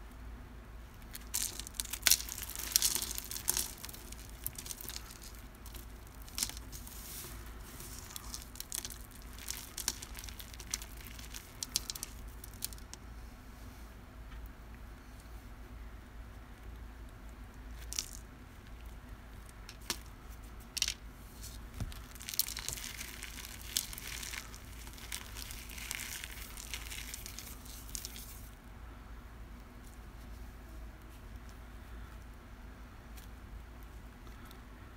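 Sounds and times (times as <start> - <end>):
cornstarch crunching and crumbling: 1.0 - 13.0, 19.7 - 28.5.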